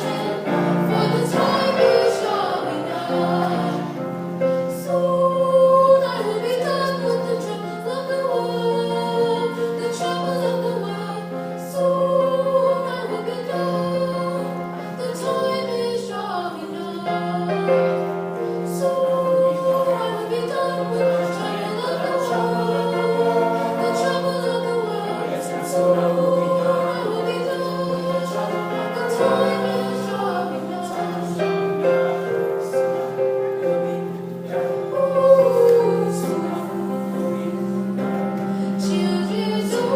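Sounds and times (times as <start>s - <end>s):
choir singing: 0.0s - 39.9s.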